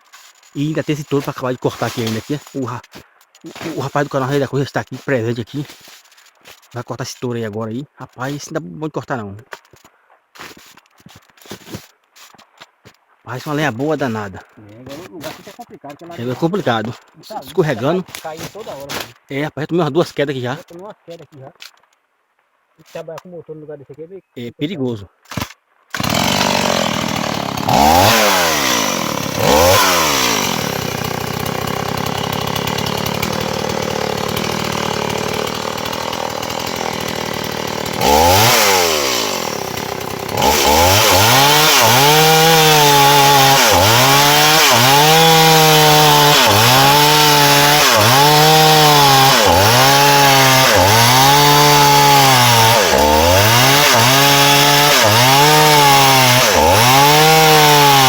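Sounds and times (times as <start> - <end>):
chainsaw cutting log: 0.0 - 6.8, 10.4 - 19.2, 25.2 - 58.0
chainsaw idling and revving: 0.6 - 2.8, 3.5 - 4.0, 25.3 - 58.0.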